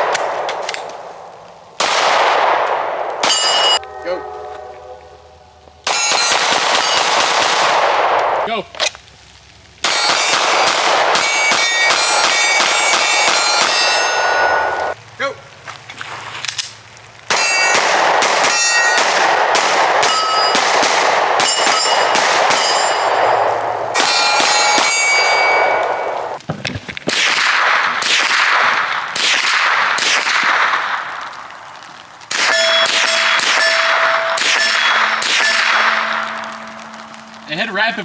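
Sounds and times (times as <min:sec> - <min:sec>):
steel targets clanging and ringing: 0:03.2 - 0:05.0, 0:05.8 - 0:07.2, 0:09.8 - 0:15.0, 0:17.3 - 0:19.3, 0:20.0 - 0:20.8, 0:21.4 - 0:26.4, 0:32.4 - 0:38.0
rapid gunfire: 0:05.9 - 0:08.4, 0:09.8 - 0:14.1, 0:17.3 - 0:23.4, 0:27.1 - 0:31.0, 0:32.3 - 0:36.4.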